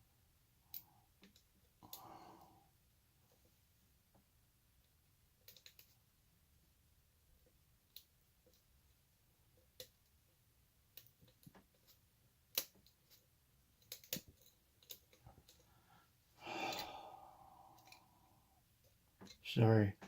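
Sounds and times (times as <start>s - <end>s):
person sighing: 16.4s - 18.0s.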